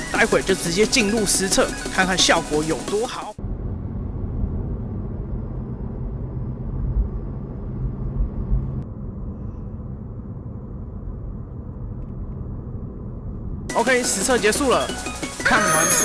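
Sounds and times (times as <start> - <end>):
road and tyre rumble: 3.4 - 13.7.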